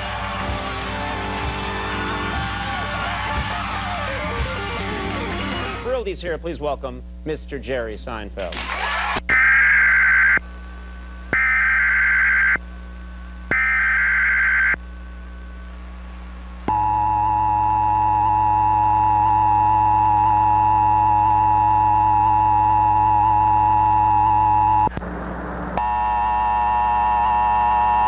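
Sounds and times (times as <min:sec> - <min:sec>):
data tone bursts: 0:11.3 - 0:12.6, 0:13.5 - 0:14.8, 0:16.7 - 0:24.9
steady two-tone attention signal: 0:25.8 - 0:28.0.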